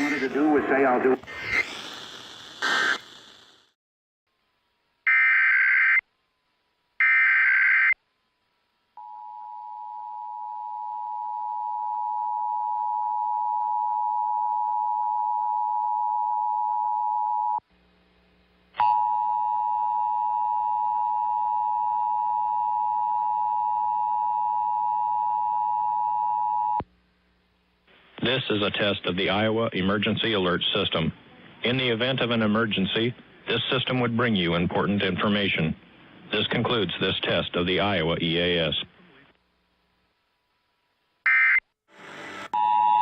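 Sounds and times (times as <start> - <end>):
digital data screech: 0.0 - 3.4.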